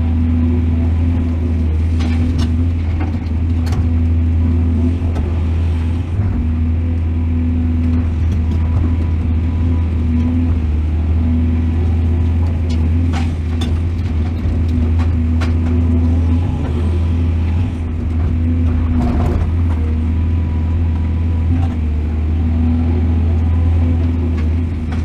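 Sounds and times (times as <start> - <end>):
excavator engine running: 0.0 - 25.0.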